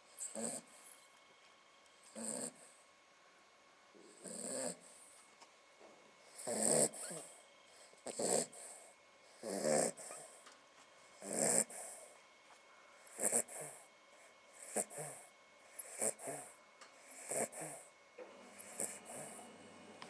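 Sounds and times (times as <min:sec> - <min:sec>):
dog snoring: 0:00.0 - 0:01.0, 0:02.0 - 0:02.9, 0:04.0 - 0:05.2, 0:06.2 - 0:10.4, 0:11.2 - 0:12.2, 0:13.0 - 0:19.6.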